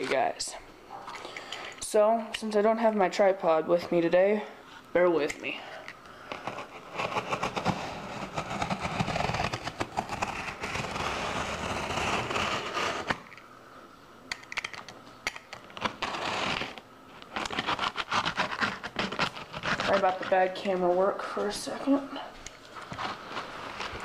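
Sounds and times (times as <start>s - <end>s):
cardboard box rustling and scraping: 15.9s - 21.7s, 22.8s - 24.0s.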